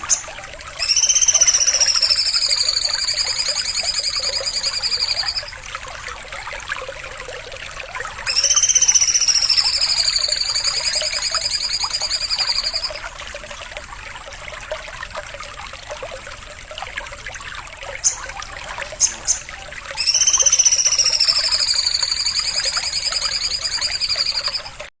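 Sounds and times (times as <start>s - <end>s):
songbird buzzing trill: 0.0s - 5.5s, 19.0s - 24.7s.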